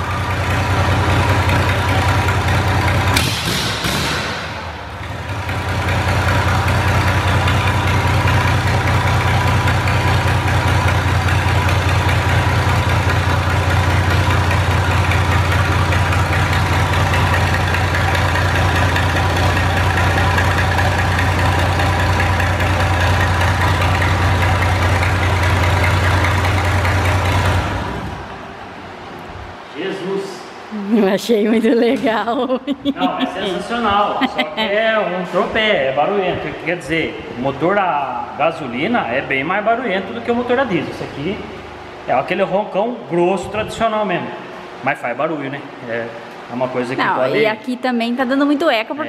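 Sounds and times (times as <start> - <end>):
truck engine idling: 0.0 - 29.7.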